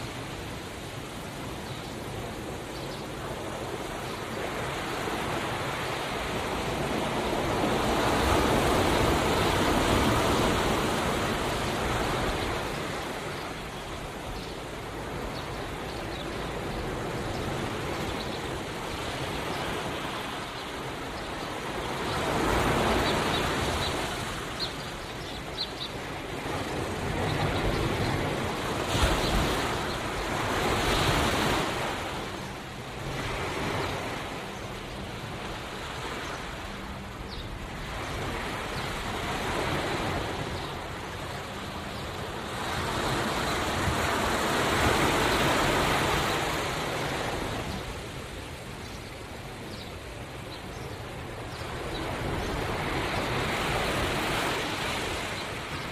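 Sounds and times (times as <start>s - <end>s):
ocean waves breaking on shore: 0.0s - 55.9s.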